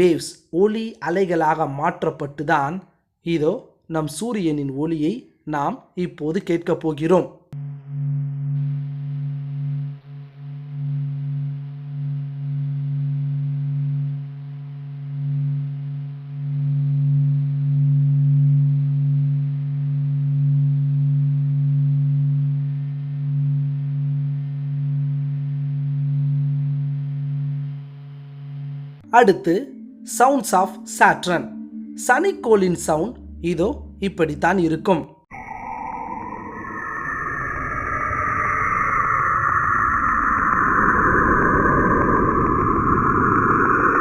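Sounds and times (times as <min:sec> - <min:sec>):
low droning hum of held tones: 0:07.6 - 0:29.0.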